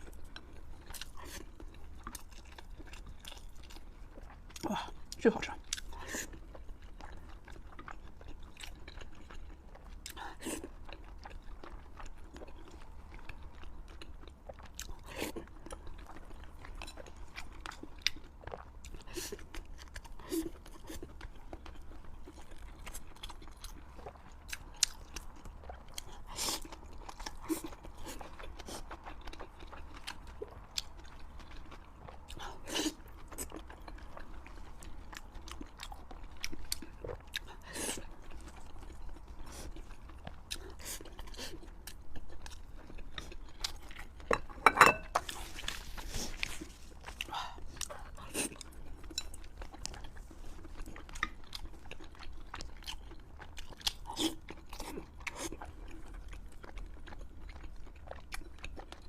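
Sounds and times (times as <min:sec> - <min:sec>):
chewing and crunching food: 0:00.0 - 0:59.0.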